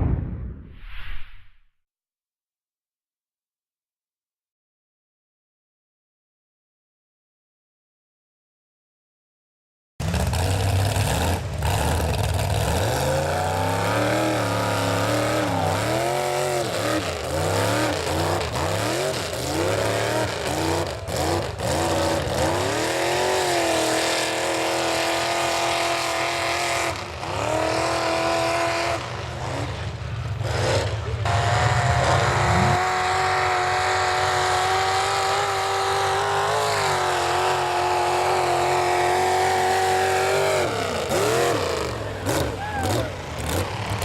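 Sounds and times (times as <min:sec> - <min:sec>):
truck engine revving hard: 0:10.0 - 0:44.0.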